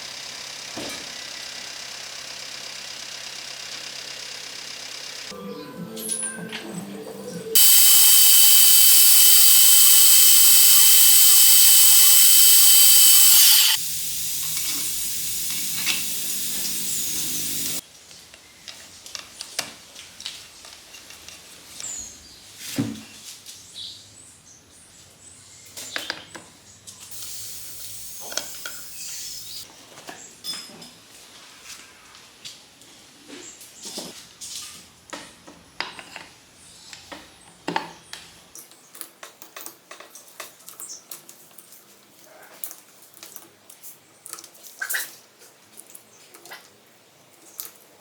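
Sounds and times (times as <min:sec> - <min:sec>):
power tool high-pitched whine: 0:07.6 - 0:17.8.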